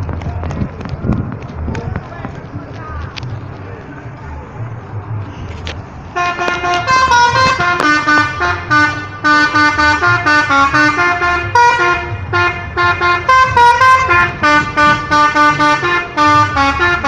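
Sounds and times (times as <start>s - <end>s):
tuned air horns melody: 6.1s - 17.0s.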